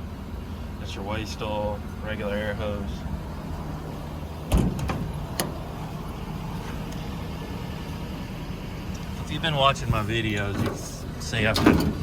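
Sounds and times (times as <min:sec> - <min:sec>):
engine idling: 0:00.0 - 0:12.0
loud thump: 0:04.5 - 0:05.6.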